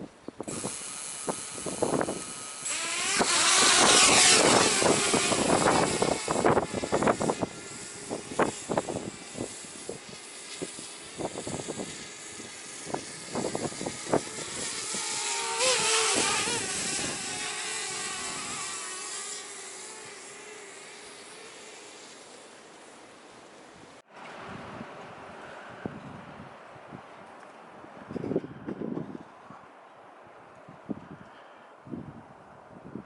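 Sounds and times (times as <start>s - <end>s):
wind buffeting microphone: 0.0s - 19.1s, 24.4s - 29.6s, 30.4s - 33.0s
drone motors whining: 0.5s - 23.2s.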